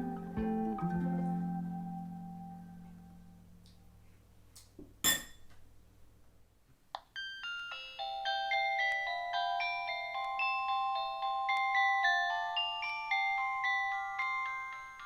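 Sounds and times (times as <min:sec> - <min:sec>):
glockenspiel mallet melody: 0:07.2 - 0:15.0.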